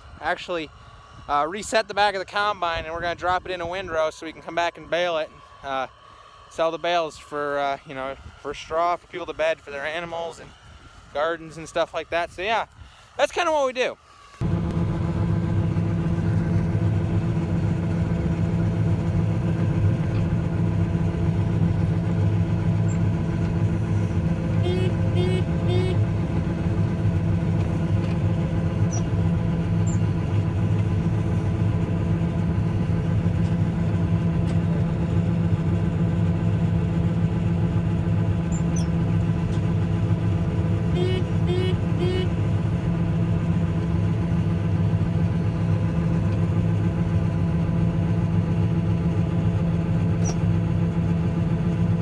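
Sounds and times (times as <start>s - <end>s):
combine harvester engine hum: 13.4s - 52.0s.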